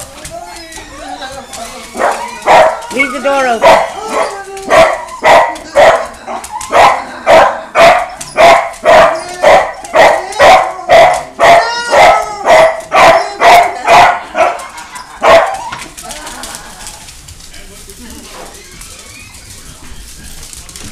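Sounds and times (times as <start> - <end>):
dog barking: 1.9 - 15.8.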